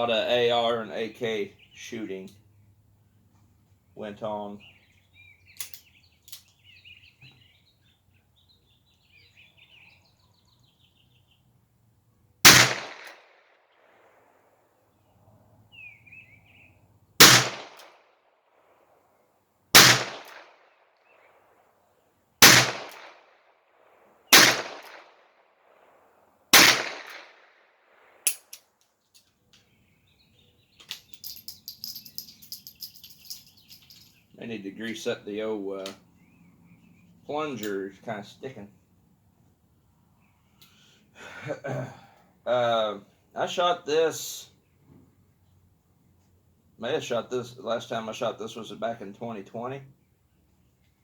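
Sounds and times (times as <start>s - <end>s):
faint bird chirp: 3.1s - 11.5s, 14.9s - 16.8s, 29.3s - 35.4s, 36.0s - 37.9s
small click: 5.6s - 6.6s.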